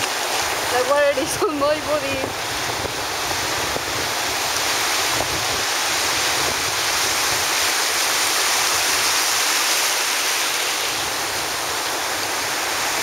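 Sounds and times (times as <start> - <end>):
wind buffeting microphone: 0.0 - 9.6
ocean surf breaking: 0.0 - 13.0.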